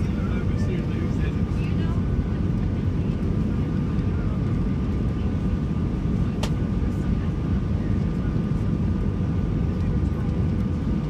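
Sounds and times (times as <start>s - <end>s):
aircraft cabin engine rumble: 0.0s - 11.0s.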